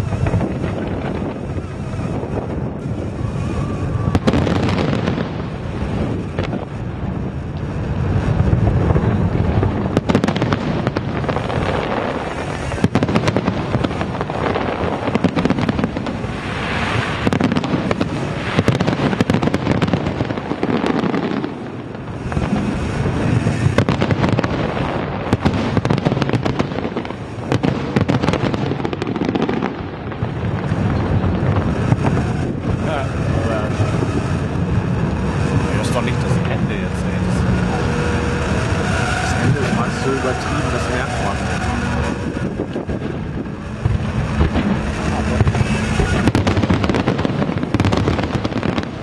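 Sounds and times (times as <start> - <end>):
fireworks crackling and popping: 0.0 - 49.0
sharp firework bangs: 0.0 - 49.0.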